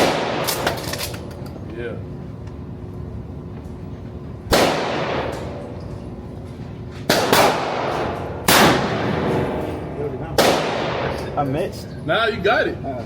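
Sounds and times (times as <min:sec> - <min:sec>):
gunshots with echoing tail: 0:00.0 - 0:00.7, 0:04.5 - 0:05.3, 0:07.1 - 0:09.5, 0:10.4 - 0:11.2.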